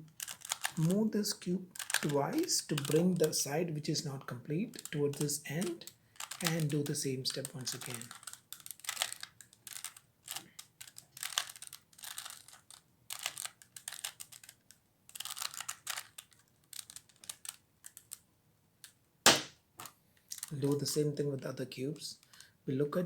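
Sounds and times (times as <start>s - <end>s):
puzzle cube clicking: 0.1s - 3.4s, 4.7s - 18.2s
sharp knock: 19.3s - 19.5s.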